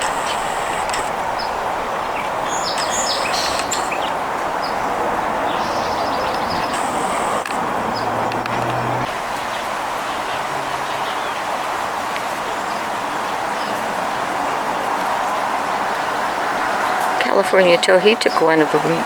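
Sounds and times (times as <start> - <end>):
small birds chirping: 0.0 - 11.5
background noise: 0.0 - 19.0.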